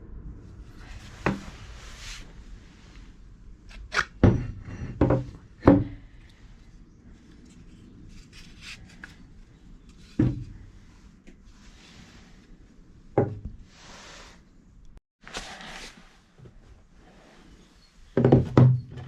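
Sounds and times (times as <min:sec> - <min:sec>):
scraping and rubbing: 0:07.2 - 0:12.6.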